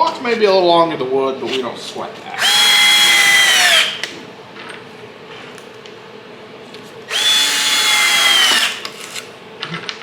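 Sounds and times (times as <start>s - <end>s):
power drill motor whine: 2.4s - 4.0s, 7.1s - 8.8s.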